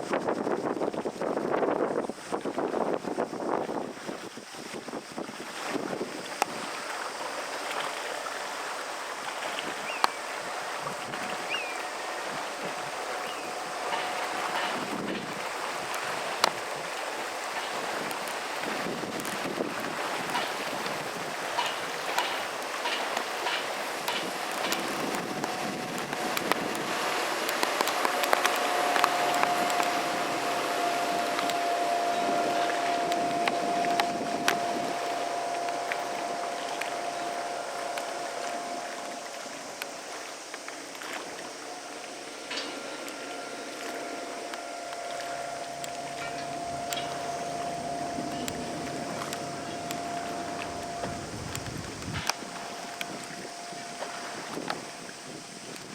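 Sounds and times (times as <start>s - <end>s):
wind buffeting microphone: 0.0s - 7.2s, 9.3s - 55.9s
outboard motor whine: 0.0s - 55.9s
water hiss: 0.0s - 55.9s.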